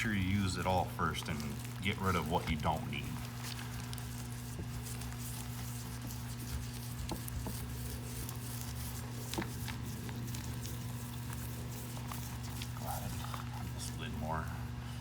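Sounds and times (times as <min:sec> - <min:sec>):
wet squishes of resin: 0:00.0 - 0:14.8
steady low hum: 0:00.0 - 0:15.0.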